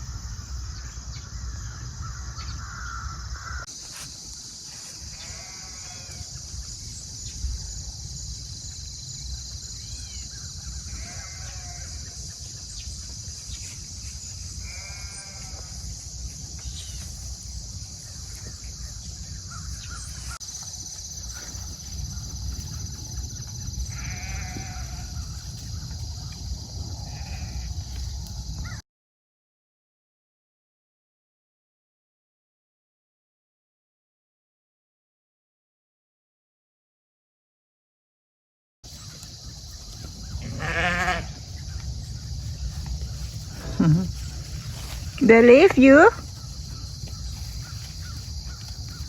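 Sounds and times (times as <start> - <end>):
farm animal bleating: 5.1 - 6.4, 10.8 - 12.2, 14.6 - 15.9, 23.8 - 25.5, 27.0 - 27.9, 40.3 - 41.4, 43.5 - 45.9.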